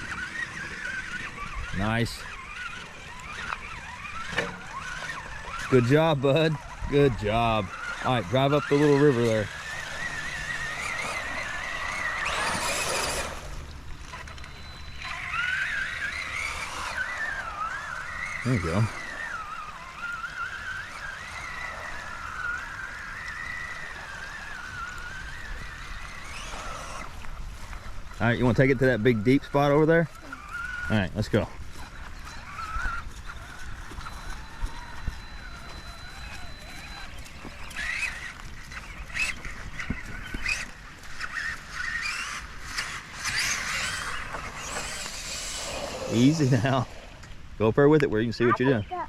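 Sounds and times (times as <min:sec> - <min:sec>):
electric motor whining: 0:00.0 - 0:49.0
truck splashing through water: 0:07.7 - 0:27.2, 0:41.2 - 0:47.1.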